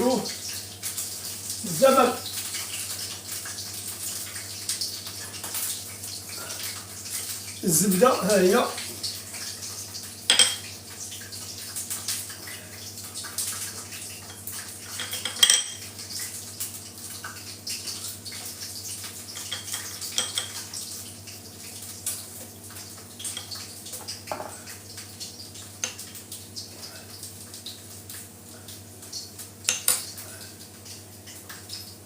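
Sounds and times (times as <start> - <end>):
utensils clinking against dishes: 14.3 - 15.8, 19.3 - 20.6.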